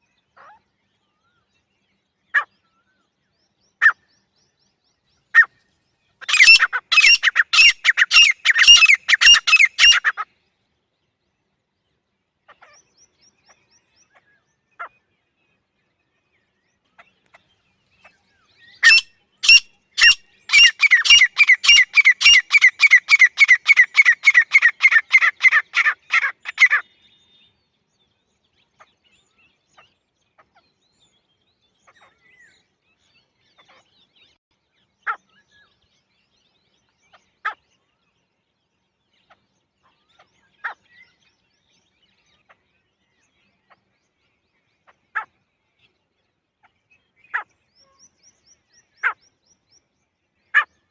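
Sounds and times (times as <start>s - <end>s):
francolin calling: 6.2s - 10.2s, 18.7s - 26.8s.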